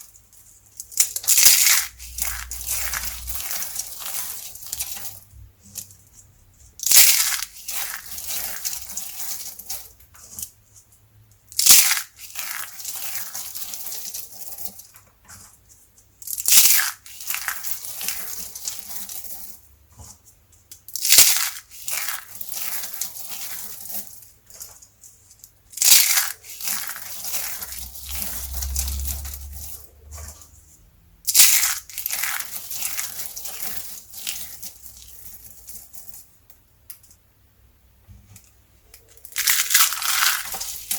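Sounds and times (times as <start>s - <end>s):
soap crumbling: 0.0s - 10.6s, 11.5s - 30.5s, 31.3s - 36.3s, 38.9s - 40.9s
soap cracking: 38.9s - 40.9s.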